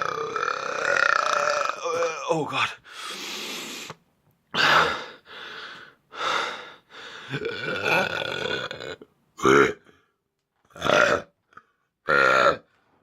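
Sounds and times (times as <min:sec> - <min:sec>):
man breathing hard: 0:02.8 - 0:04.0, 0:04.8 - 0:07.4.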